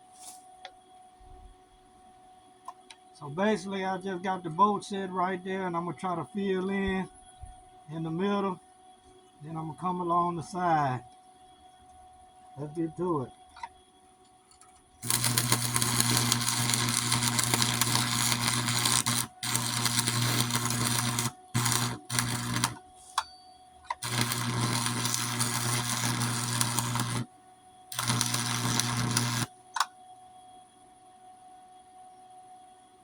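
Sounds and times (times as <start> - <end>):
steady mains hum: 0.0 - 33.0
welding arc crackling and buzzing: 15.0 - 22.8, 23.9 - 27.3, 27.9 - 29.9.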